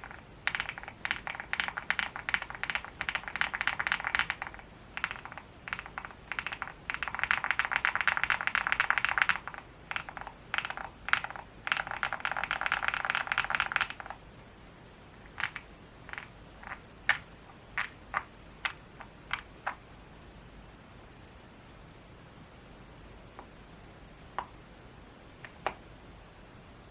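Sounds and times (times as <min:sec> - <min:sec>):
mechanical keyboard typing: 0:00.0 - 0:14.2, 0:15.3 - 0:19.8.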